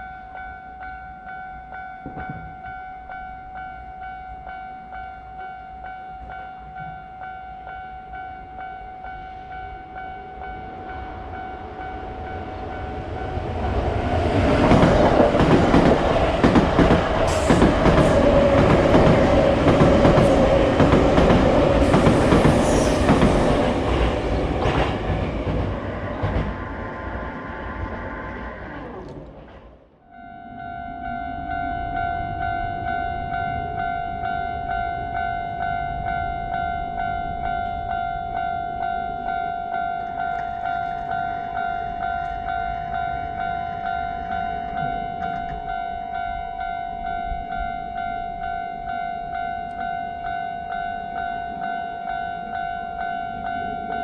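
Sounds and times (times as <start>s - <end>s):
railroad crossing bell ringing: 0.0s - 25.5s, 30.1s - 54.0s
train wheels clicking over rails: 13.6s - 29.6s.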